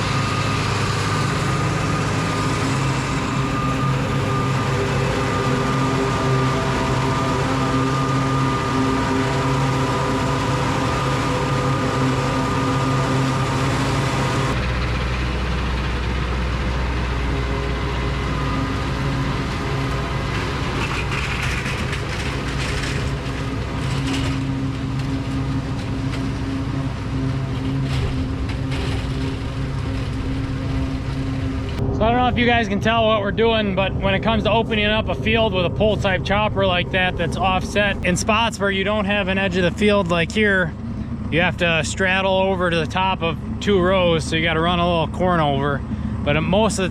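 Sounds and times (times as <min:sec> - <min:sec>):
tractor running under load: 0:00.0 - 0:46.9
crackles and rattles: 0:13.2 - 0:43.7.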